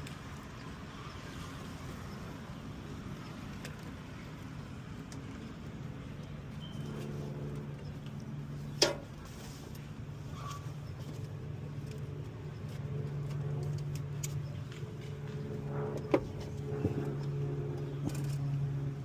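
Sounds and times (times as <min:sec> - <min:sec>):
low machine hum: 0:04.1 - 0:19.0.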